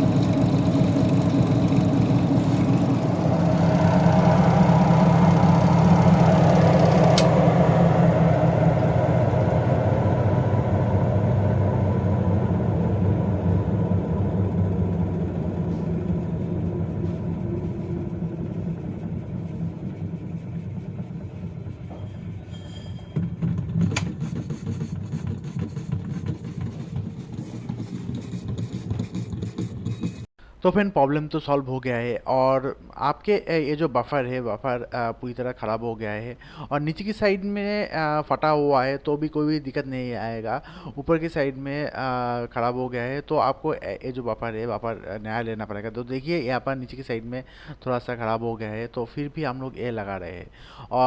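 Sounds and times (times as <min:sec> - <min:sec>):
washing machine spin motor hum: 0:00.0 - 0:30.3.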